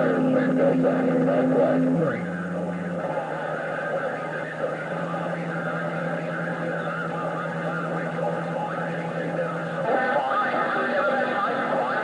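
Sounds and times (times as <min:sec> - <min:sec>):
low hum: 0:00.0 - 0:11.8
faint garbled radio voices: 0:00.0 - 0:12.0
radio static hiss: 0:00.0 - 0:12.0.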